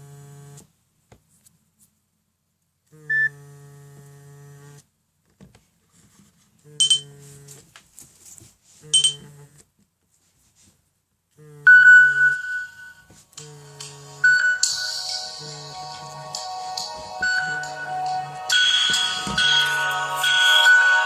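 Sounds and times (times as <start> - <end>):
phone vibration buzzing: 0.0 - 0.7, 2.9 - 4.9, 6.6 - 7.6, 8.8 - 9.6, 11.4 - 15.8
ringtone chime notes: 6.8 - 7.1, 9.0 - 9.3, 11.7 - 13.1, 14.2 - 21.0.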